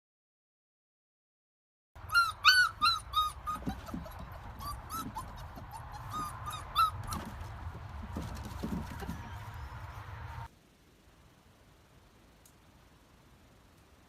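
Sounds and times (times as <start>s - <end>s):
dog whimpering: 2.1s - 7.4s.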